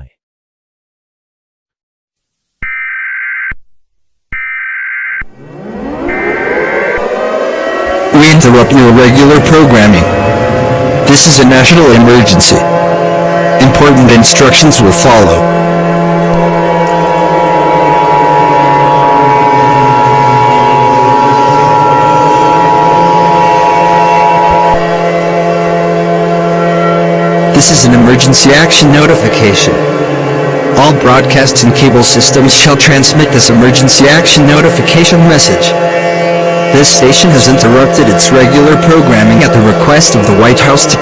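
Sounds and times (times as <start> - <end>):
siren-like wail: 2.6 - 3.6, 4.4 - 41.0
high-pitched electronic alert tone: 4.4 - 15.4
buzzy data bursts: 4.4 - 36.1
low droning hum: 5.3 - 41.0.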